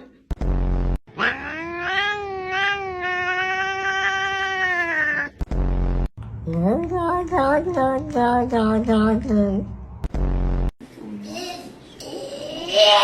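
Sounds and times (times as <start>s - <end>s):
cat yowling: 1.2s - 5.3s.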